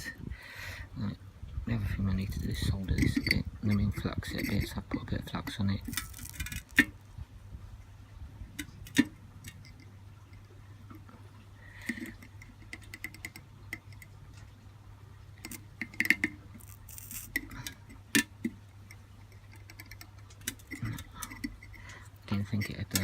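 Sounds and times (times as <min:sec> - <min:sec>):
metal parts and tools clicking: 0:02.4 - 0:07.0, 0:15.4 - 0:23.0.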